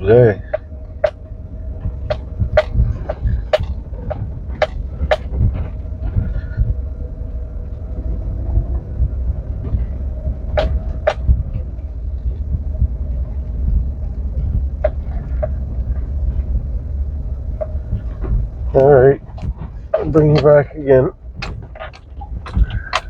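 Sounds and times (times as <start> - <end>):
vehicle engine and road rumble: 0.0 - 23.0
sharp knocks: 0.5 - 6.3, 10.5 - 11.5, 21.4 - 23.0.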